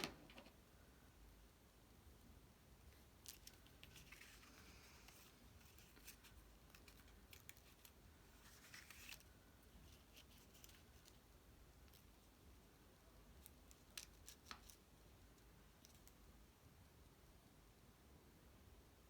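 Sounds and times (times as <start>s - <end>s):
paper rustling: 3.2s - 11.2s.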